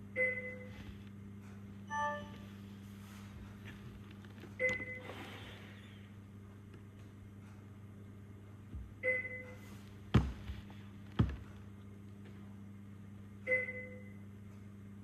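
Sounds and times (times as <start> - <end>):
incubator equipment hum: 0.0 - 15.0
monitor electronic chime: 1.9 - 2.5.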